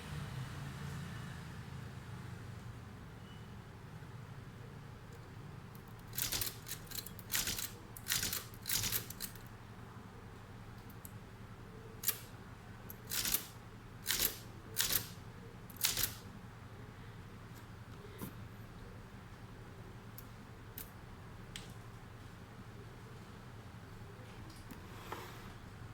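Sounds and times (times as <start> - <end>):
manual typewriter clacking: 5.8 - 9.5, 12.0 - 12.3, 12.9 - 16.2.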